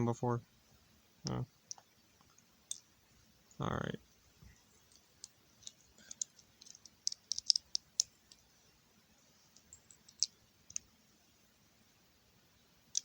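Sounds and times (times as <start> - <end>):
plastic bricks clicking and clattering: 4.9 - 8.4.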